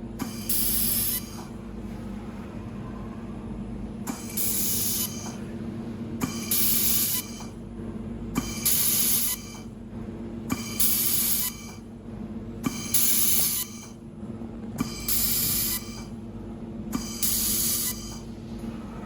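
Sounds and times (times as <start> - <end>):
low machine hum: 0.0 - 19.0
loud welding hiss: 0.5 - 1.3, 10.8 - 11.6, 15.1 - 15.9, 17.1 - 18.1.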